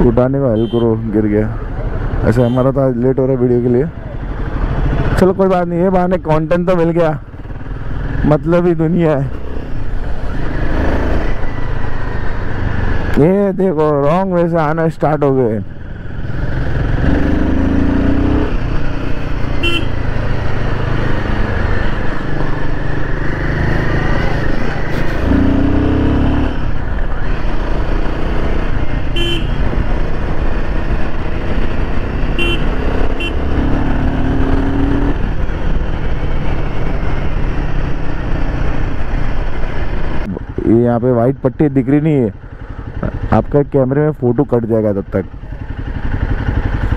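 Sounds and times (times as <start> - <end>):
vehicle horn beeps: 0.5 - 1.0, 2.4 - 2.7, 19.6 - 20.0, 29.1 - 29.6, 32.4 - 33.4
motorcycle engine accelerating: 3.0 - 13.4, 14.2 - 40.8, 45.0 - 46.9.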